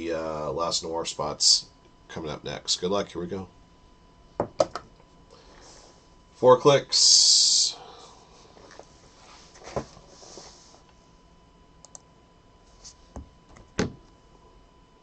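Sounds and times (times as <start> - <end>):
computer mouse clicks: 11.8 - 12.1.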